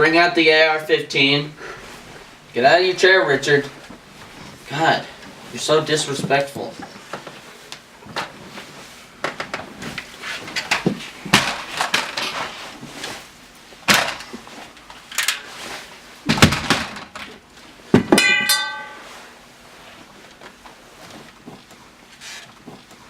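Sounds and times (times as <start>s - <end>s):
objects thudding and clinking: 16.3s - 17.3s, 17.9s - 19.2s.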